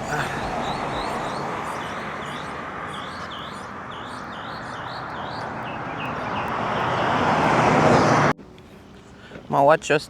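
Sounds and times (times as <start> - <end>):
outdoor background noise: 0.0 - 10.0
bird chirping rapidly: 0.1 - 7.2.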